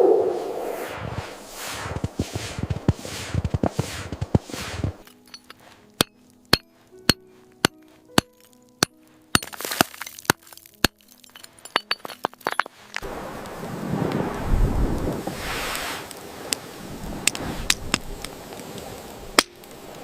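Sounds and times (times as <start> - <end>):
steady wind: 0.0 - 8.2, 11.3 - 20.0
sharp glassy clinks: 9.4 - 12.7.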